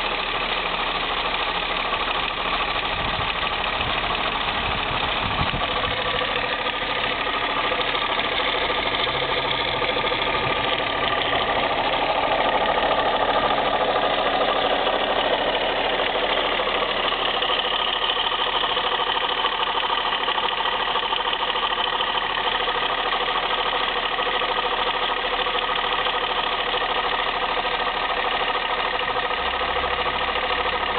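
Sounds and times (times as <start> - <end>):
car engine running: 0.0 - 30.9
strange engine noise: 0.0 - 30.9.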